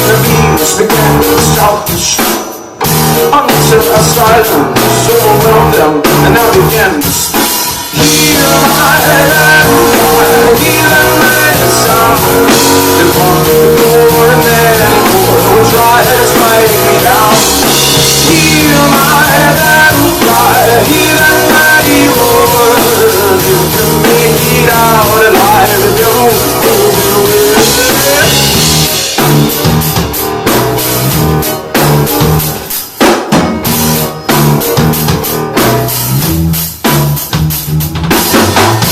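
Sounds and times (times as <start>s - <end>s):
drum kit hits: 0.0s - 38.9s
live rock band playing: 0.0s - 38.9s.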